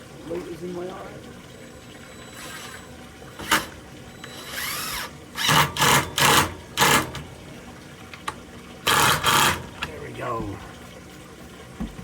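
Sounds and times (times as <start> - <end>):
cordless drill driving a screw: 4.2 - 6.3.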